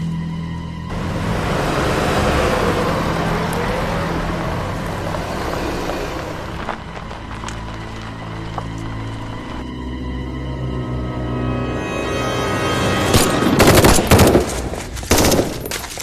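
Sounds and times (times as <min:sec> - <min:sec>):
car driving past at speed: 0:00.9 - 0:07.2.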